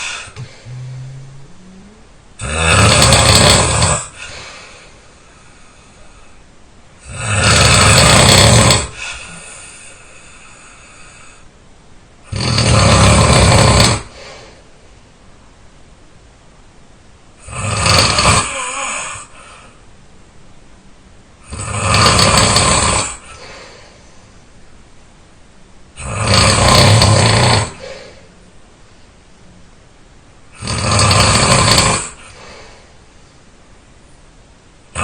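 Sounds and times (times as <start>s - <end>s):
quiet breathing: 0.0s - 2.2s, 3.2s - 7.1s, 8.3s - 11.6s, 14.0s - 15.0s, 18.4s - 20.0s, 23.0s - 24.6s, 27.6s - 29.6s, 31.9s - 33.6s
person snoring loudly: 0.0s - 4.8s, 7.0s - 11.4s, 12.3s - 14.2s, 17.4s - 19.7s, 21.4s - 23.8s, 26.0s - 28.3s, 30.6s - 32.8s.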